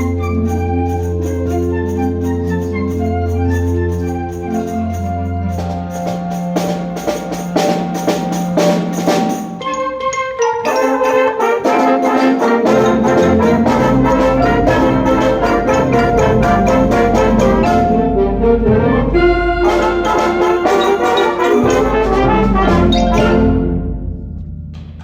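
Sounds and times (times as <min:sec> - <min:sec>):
loud brass music: 0:10.7 - 0:24.1.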